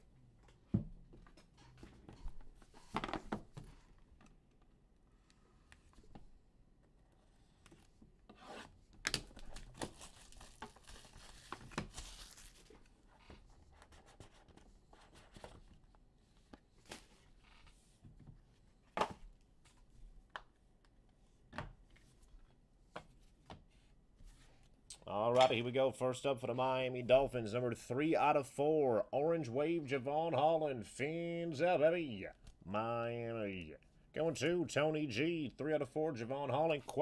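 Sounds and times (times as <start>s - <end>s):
wrappers rustling and tearing: 9.4s - 12.9s.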